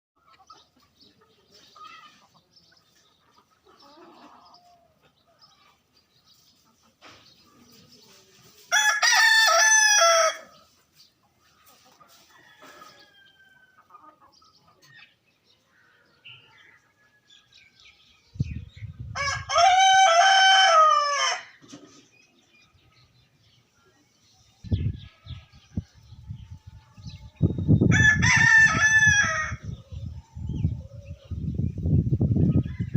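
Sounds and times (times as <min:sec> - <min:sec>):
rooster crowing: 0:08.7 - 0:10.5, 0:19.2 - 0:21.5, 0:27.9 - 0:29.6.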